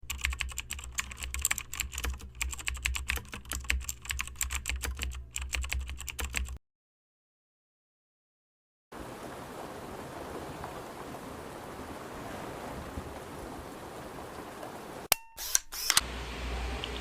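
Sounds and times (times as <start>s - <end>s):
fast typing on computer keyboard: 0.0s - 6.6s.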